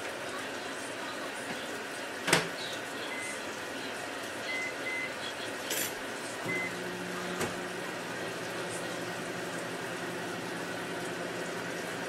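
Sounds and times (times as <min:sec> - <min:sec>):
microwave oven humming: 0:02.3 - 0:12.0
keypad beeps: 0:04.5 - 0:05.1, 0:06.5 - 0:06.8.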